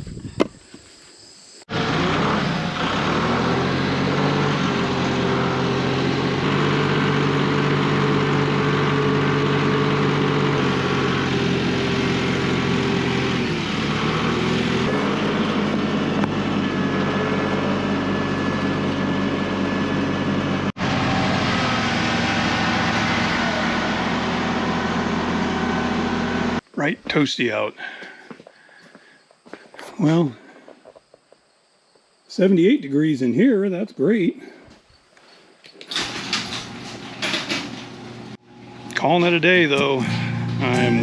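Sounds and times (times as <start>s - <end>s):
tractor engine running: 1.7s - 26.6s, 39.7s - 41.0s.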